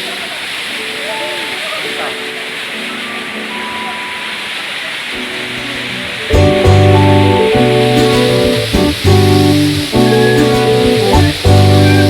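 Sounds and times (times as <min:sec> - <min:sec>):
waterfall rushing: 0:00.0 - 0:12.0
loud guitar music: 0:05.2 - 0:12.0.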